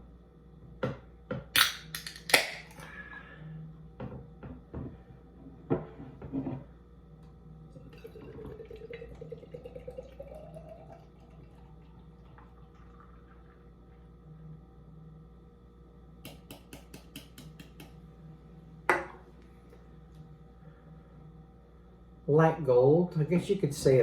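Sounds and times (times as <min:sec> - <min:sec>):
can cracked open with hiss: 0:01.6 - 0:02.7
beer pouring into glass: 0:07.7 - 0:13.8.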